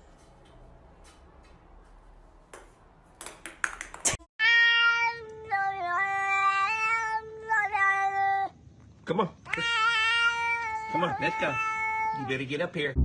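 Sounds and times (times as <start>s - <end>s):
cat meowing: 9.5s - 12.4s.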